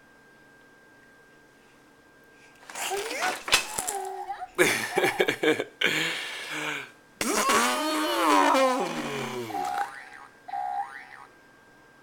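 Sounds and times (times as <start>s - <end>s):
person sputtering lips: 6.5s - 10.9s
buzzing lip sound: 7.2s - 11.3s.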